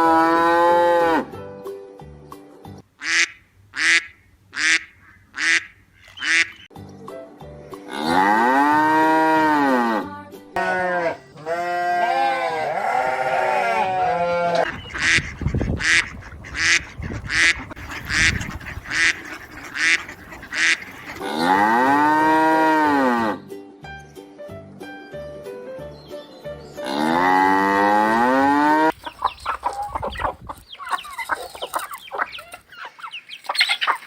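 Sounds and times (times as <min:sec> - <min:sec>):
short quacks: 0:03.0 - 0:06.6, 0:14.6 - 0:21.6
cattle mooing: 0:07.9 - 0:14.7, 0:21.1 - 0:23.4, 0:26.8 - 0:28.9.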